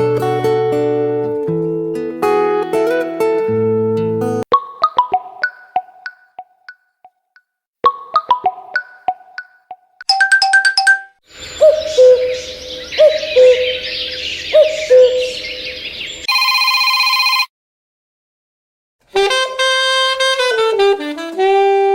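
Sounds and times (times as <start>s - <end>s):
ringtone melody: 10.1s - 11.2s, 16.3s - 17.5s
birdsong ringtone with hoots: 10.1s - 17.5s
phone chime notes: 16.3s - 17.5s.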